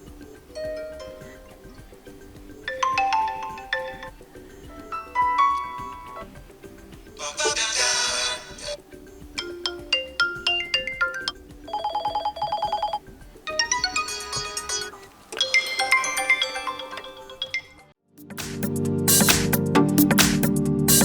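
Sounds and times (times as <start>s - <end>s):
melodic phone tones: 2.6s - 6.4s, 9.4s - 17.9s
descending chime notes: 13.5s - 17.9s.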